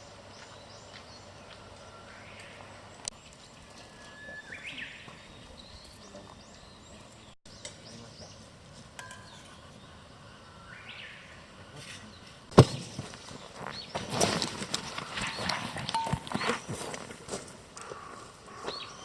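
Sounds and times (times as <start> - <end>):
faint outdoor background noise: 0.0 - 19.0
songbird whistling call: 3.7 - 6.9, 9.1 - 11.4.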